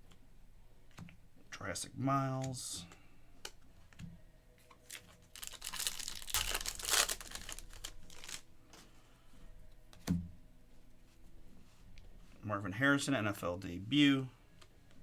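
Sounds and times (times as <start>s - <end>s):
plastic wrapper tearing and crinkling: 4.8s - 8.4s.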